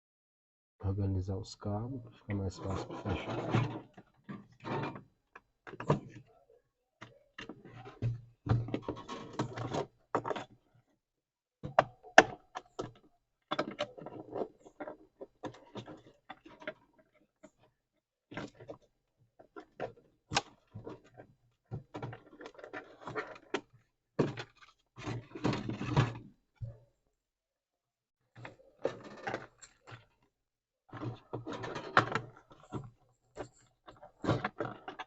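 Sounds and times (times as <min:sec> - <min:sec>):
plastic parts clicking and rustling: 0:30.9 - 0:35.0.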